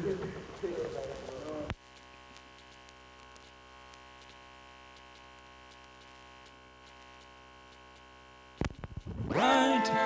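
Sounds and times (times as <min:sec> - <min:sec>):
electrical mains hum: 0:00.0 - 0:10.0
vinyl record surface clicks: 0:02.4 - 0:09.3.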